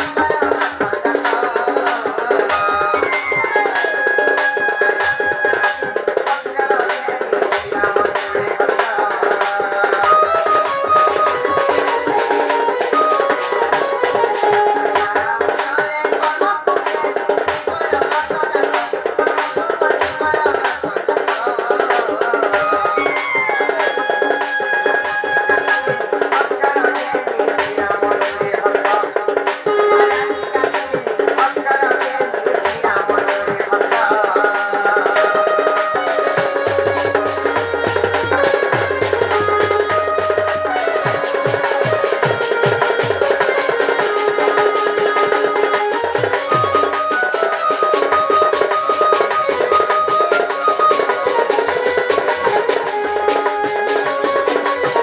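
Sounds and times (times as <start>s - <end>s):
rapid folk drumming: 0.0s - 55.0s
high melody line: 35.3s - 55.0s.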